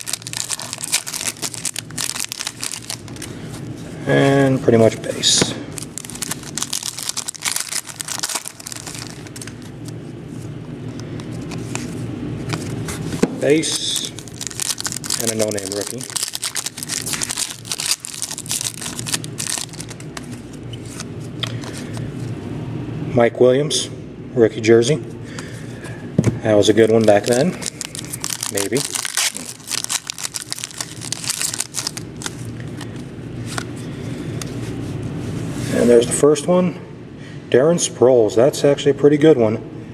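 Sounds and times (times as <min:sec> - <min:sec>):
cards clicking and rustling: 0:00.0 - 0:03.3, 0:05.8 - 0:09.7, 0:13.6 - 0:22.0, 0:26.9 - 0:33.7
steady low hum: 0:00.0 - 0:39.9.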